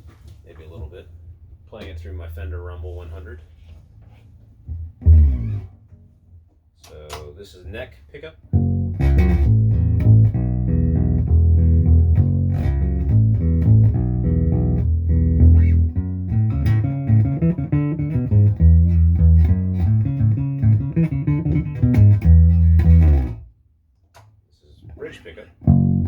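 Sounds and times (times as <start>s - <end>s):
electric bass plucked notes: 4.7s - 5.8s, 8.5s - 23.5s, 25.6s - 26.0s.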